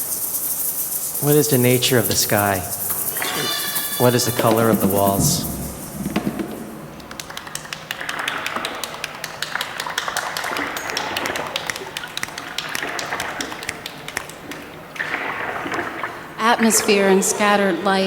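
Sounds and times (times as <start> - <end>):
soft hiss: 0.0 - 7.3.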